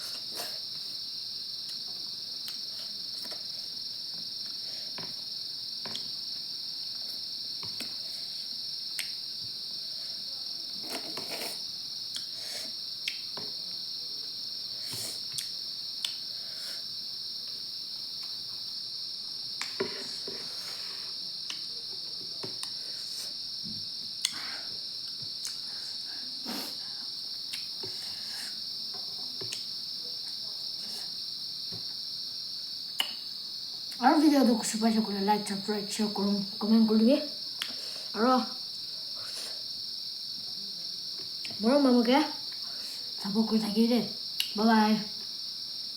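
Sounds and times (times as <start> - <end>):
crickets chirping: 0.0 - 45.9
person eating: 10.8 - 12.4.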